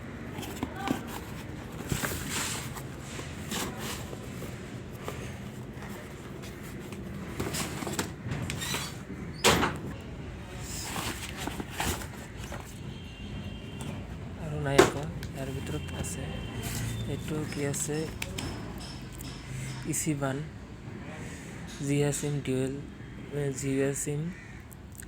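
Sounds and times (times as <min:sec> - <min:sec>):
cardboard tearing and rustling: 0:00.2 - 0:09.0, 0:10.6 - 0:12.8.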